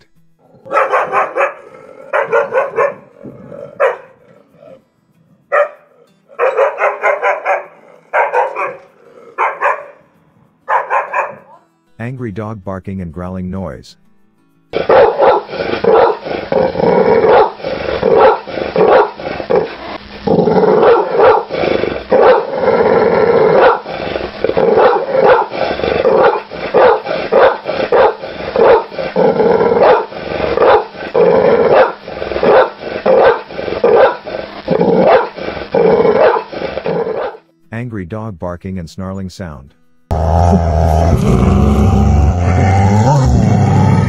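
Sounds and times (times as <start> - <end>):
dog barking: 0.6 - 3.2, 3.8 - 4.2, 5.5 - 10.1, 10.7 - 11.6, 14.8 - 16.2, 17.2 - 19.2, 20.8 - 21.5, 22.1 - 22.5, 23.6 - 23.9, 24.7 - 28.9, 29.8 - 31.0, 31.7 - 34.3, 35.0 - 35.4, 36.1 - 37.4
dog snarling: 0.6 - 4.8, 5.5 - 10.0, 14.8 - 37.4.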